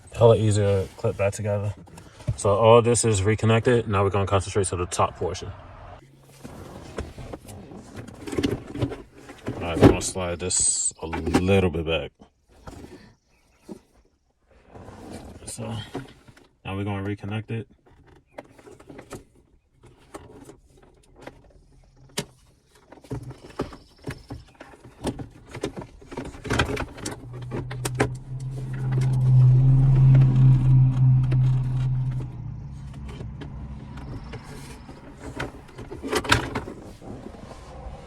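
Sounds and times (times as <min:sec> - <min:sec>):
low motor hum: 0:26.0 - 0:38.0.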